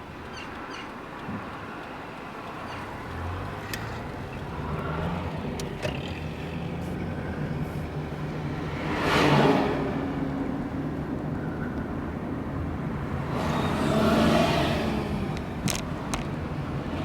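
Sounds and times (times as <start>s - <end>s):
faint clicks: 0.0s - 7.0s
car engine humming: 0.0s - 17.0s.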